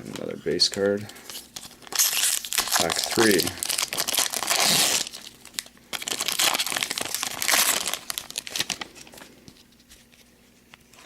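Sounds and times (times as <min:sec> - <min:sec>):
wrapper tearing and crinkling: 0:01.3 - 0:09.3.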